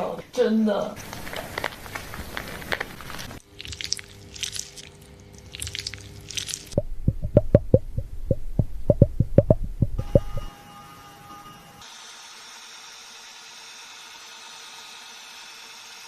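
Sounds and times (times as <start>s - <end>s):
hands scrubbing wet lathered hair: 1.0s - 6.8s.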